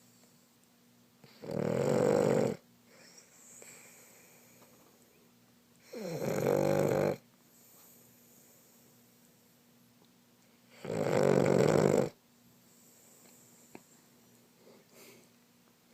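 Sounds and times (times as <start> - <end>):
dog snoring: 1.2 - 4.0, 5.8 - 7.2, 10.7 - 12.2
faint dog breathing: 2.9 - 5.1.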